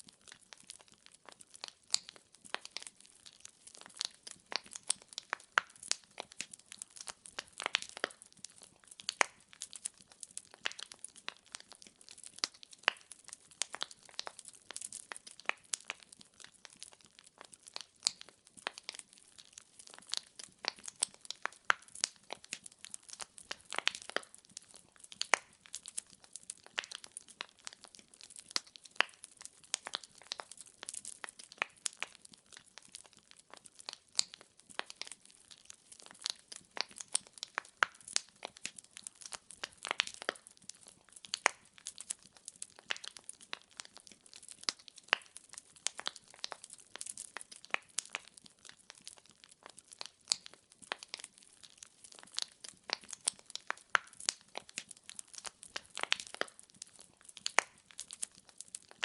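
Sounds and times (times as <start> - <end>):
wood fire crackling and popping: 0.0 - 59.0.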